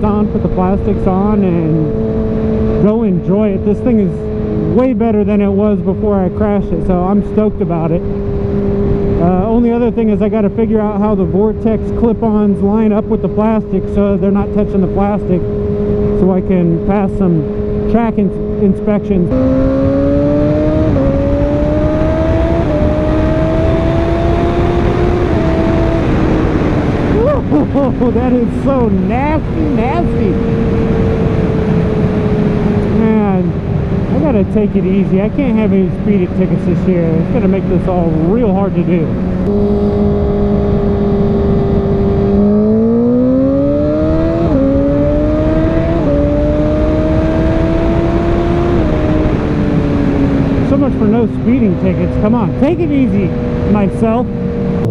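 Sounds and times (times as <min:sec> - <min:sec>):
engine note dropping at upshifts: 0:00.0 - 0:54.9
motorcycle engine accelerating: 0:00.0 - 0:54.9
wind rush on microphone: 0:19.3 - 0:54.9.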